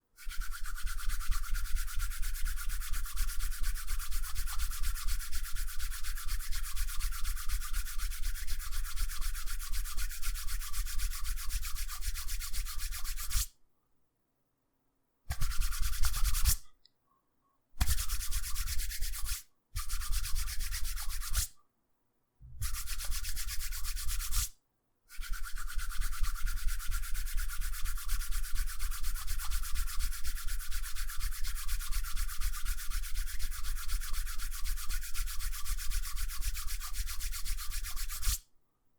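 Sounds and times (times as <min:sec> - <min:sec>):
hands rubbing together: 0:15.3 - 0:16.6.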